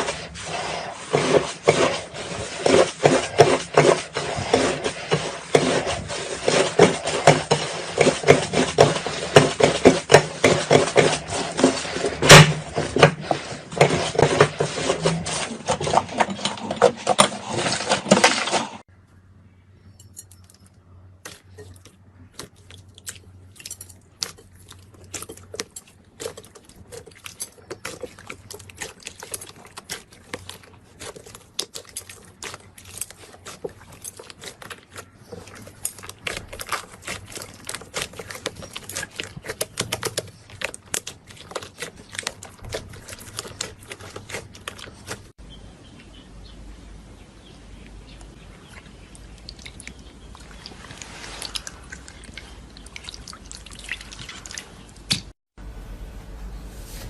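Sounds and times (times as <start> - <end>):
crunchy slime crackling and popping: 26.2 - 45.4.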